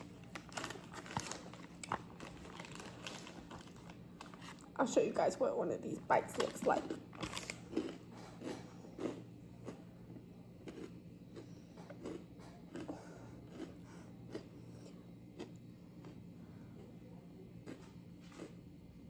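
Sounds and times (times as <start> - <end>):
person chewing wetly: 6.4 - 17.0, 17.6 - 18.6.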